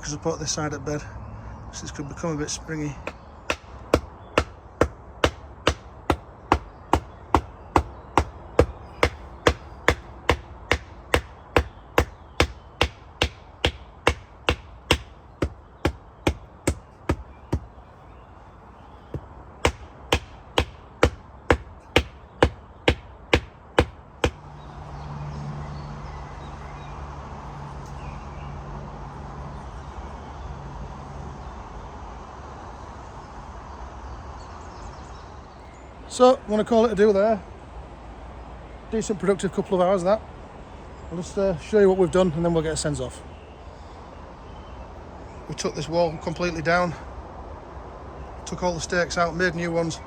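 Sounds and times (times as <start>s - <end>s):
hammer striking wooden stake: 3.0s - 17.7s, 19.1s - 24.4s.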